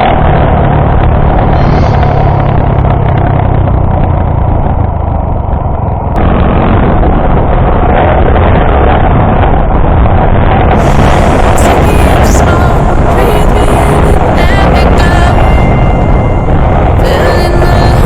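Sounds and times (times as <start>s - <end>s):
motorcycle engine running: 0.0s - 6.3s, 10.5s - 18.0s.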